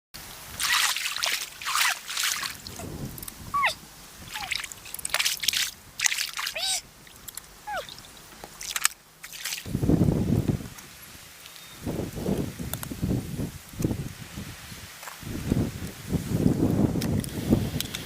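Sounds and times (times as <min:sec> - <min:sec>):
water splashing and sloshing: 0:00.2 - 0:09.9
low water rush: 0:00.2 - 0:11.4.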